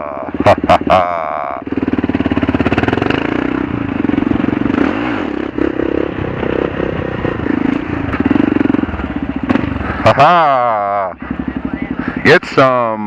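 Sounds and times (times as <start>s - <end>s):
motorcycle engine running: 0.0s - 13.0s.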